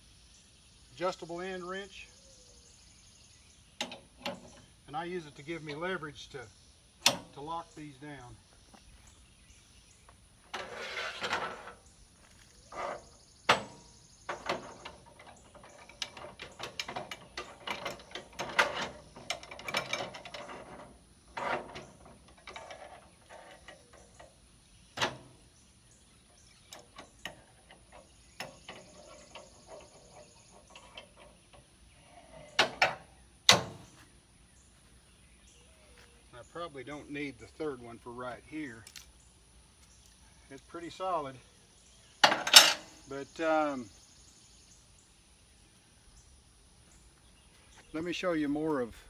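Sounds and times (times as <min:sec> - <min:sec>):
metal clanks and scrapes: 0:10.5 - 0:24.4, 0:26.7 - 0:34.0, 0:42.2 - 0:43.1.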